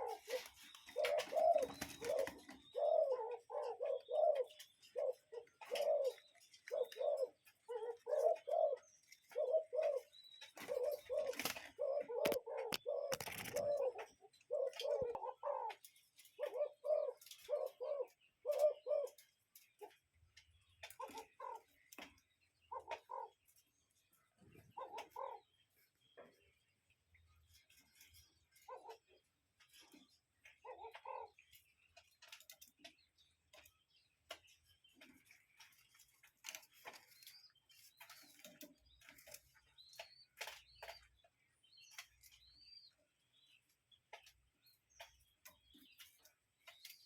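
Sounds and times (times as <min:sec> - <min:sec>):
cuckoo calling: 0:00.0 - 0:19.9, 0:20.6 - 0:23.4, 0:24.5 - 0:25.5, 0:28.6 - 0:31.7
bird chirps: 0:00.0 - 0:47.0.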